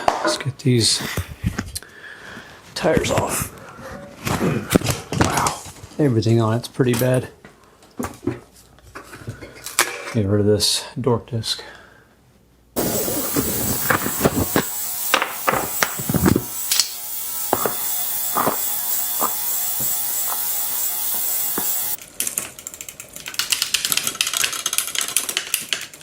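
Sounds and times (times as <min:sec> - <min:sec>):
power tool buzzing: 0:12.8 - 0:22.0
ratchet-like clicking: 0:12.8 - 0:25.8.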